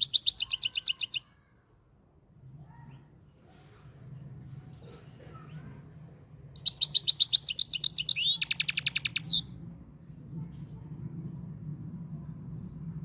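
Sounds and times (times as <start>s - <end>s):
goldfinch twittering song: 0.0s - 1.2s, 6.6s - 9.4s.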